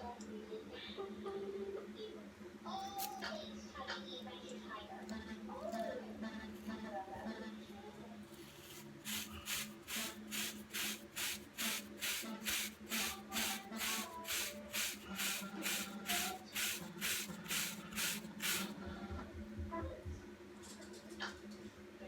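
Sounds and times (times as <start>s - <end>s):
brush strokes on short hair: 8.4s - 18.7s.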